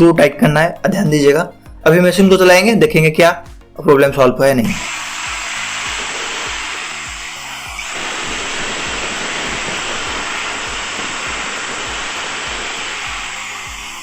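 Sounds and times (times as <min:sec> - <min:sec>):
background music beat: 0:00.0 - 0:14.0
electric motor whirring: 0:04.6 - 0:14.0.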